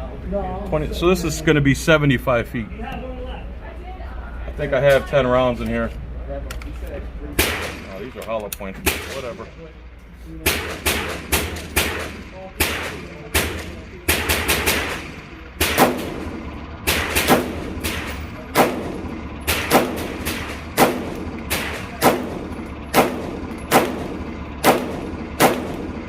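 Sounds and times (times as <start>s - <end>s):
handgun shots with echo: 7.4s - 8.0s, 10.5s - 16.3s, 16.9s - 25.9s.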